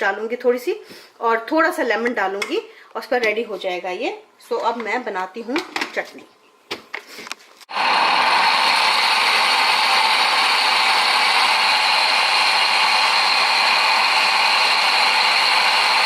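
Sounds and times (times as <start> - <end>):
blender motor grinding: 7.7 - 16.0.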